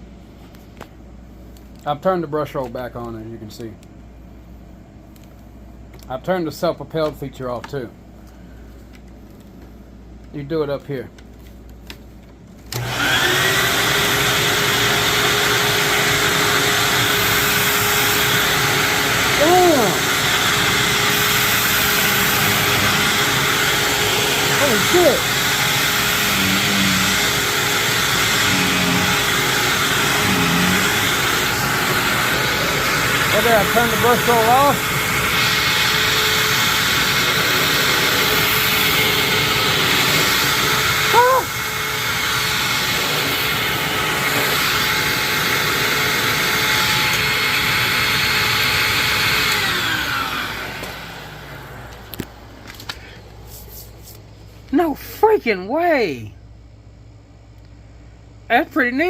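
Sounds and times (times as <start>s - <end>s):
vacuum motor whine: 12.6s - 53.3s.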